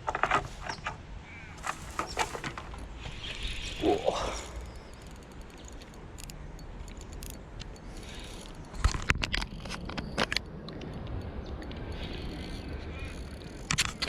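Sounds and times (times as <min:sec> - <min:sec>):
faint ticks: 0:04.3 - 0:14.0
fishing tackle clicks and knocks: 0:04.6 - 0:14.0.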